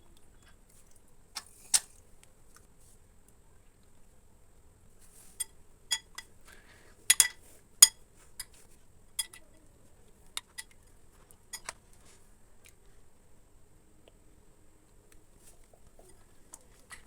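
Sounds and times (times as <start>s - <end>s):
utensil clinking on container: 5.4s - 6.3s, 7.1s - 8.6s, 9.2s - 9.4s.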